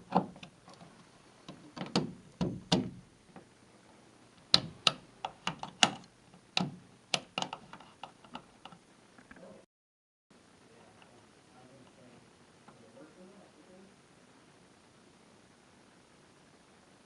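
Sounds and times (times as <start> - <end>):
sharp clicks and taps: 4.5 - 9.4.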